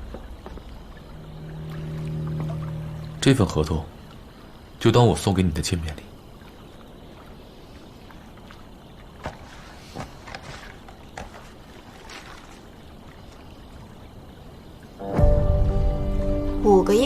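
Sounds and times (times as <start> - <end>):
faint steady hiss: 0.0 - 17.0
paper rustling: 9.2 - 12.7.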